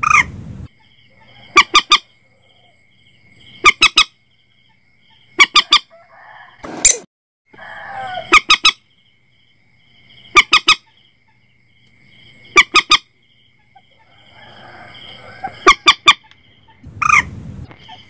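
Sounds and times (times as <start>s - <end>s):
moorhen calls: 0.0s - 2.8s, 3.6s - 4.2s, 7.6s - 8.8s, 10.3s - 11.0s, 12.5s - 17.3s.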